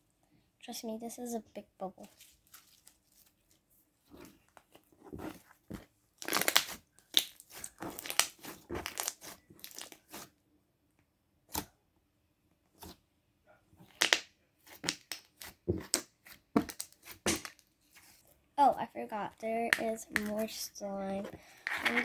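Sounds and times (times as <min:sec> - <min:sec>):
slime squishing with popping bubbles: 0:04.1 - 0:10.3, 0:13.8 - 0:17.7.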